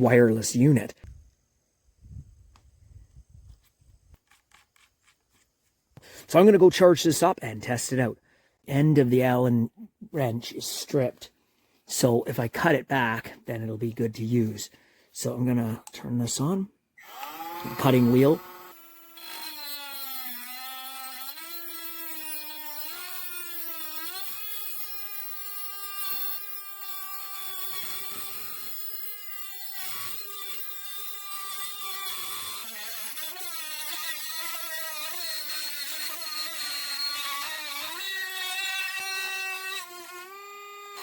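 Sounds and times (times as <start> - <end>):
rotary tool motor whine: 17.0 - 41.0.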